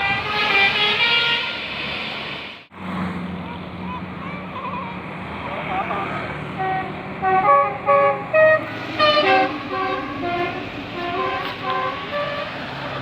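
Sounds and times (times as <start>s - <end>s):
bus musical horn tune: 0.0s - 1.9s, 6.5s - 13.0s.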